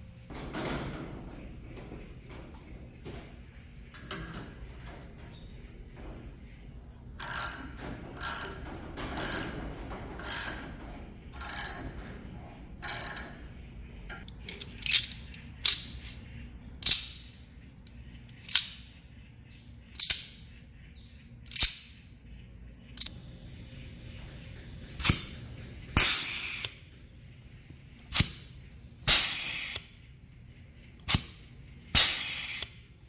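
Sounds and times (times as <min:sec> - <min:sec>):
workshop tool mechanical strokes: 0:07.2 - 0:08.6, 0:09.2 - 0:09.6, 0:10.2 - 0:10.6, 0:11.4 - 0:11.8, 0:12.8 - 0:13.4, 0:14.4 - 0:16.2, 0:16.8 - 0:17.4, 0:18.3 - 0:19.0, 0:20.0 - 0:20.6, 0:21.5 - 0:22.0, 0:25.0 - 0:26.8, 0:28.0 - 0:29.9, 0:31.0 - 0:32.8.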